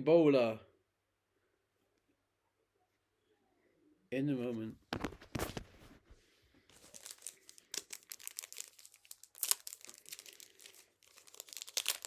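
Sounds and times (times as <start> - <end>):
card pack wrapper crinkling: 5.0 - 5.9, 6.7 - 12.0.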